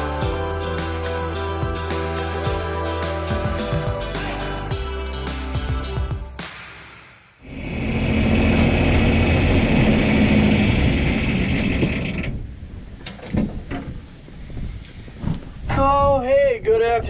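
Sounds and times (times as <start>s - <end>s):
machine running: 7.4s - 12.4s.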